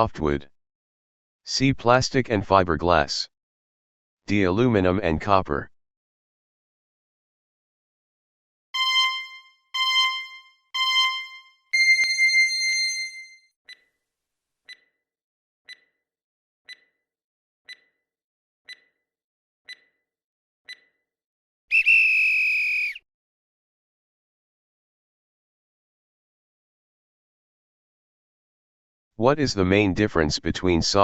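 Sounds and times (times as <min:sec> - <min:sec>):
timer ticks: 0:08.8 - 0:12.2, 0:13.7 - 0:13.9, 0:14.7 - 0:14.9, 0:15.7 - 0:16.0, 0:16.7 - 0:17.0, 0:17.7 - 0:18.0, 0:18.7 - 0:19.0, 0:19.7 - 0:20.0, 0:20.7 - 0:21.0
electronic beeps: 0:08.8 - 0:13.3
bright electronic tone: 0:08.8 - 0:13.4.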